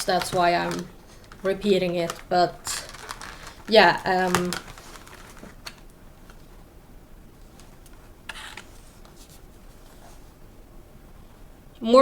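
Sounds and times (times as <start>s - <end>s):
packaging rustle: 0.0s - 6.6s.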